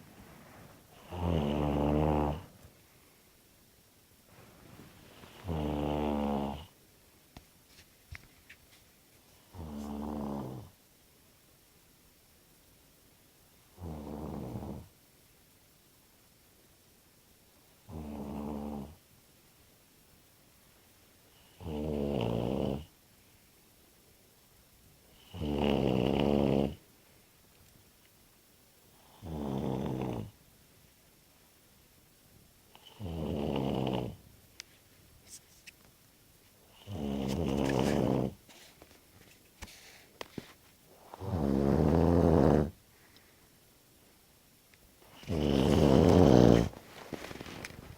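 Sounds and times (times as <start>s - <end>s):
person snoring: 1.0s - 2.5s, 41.2s - 42.8s, 45.1s - 46.8s.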